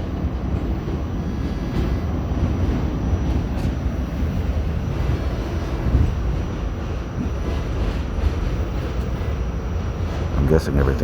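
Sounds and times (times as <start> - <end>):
subway train rumbling: 0.0 - 11.0.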